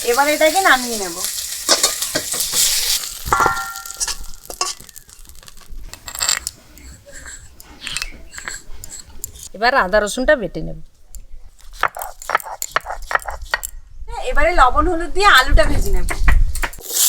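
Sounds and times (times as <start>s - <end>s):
food sizzling in hot oil: 0.0s - 7.6s, 16.8s - 17.0s
metal cookware clattering: 0.0s - 8.6s
metal clinking on metal: 1.7s - 7.0s.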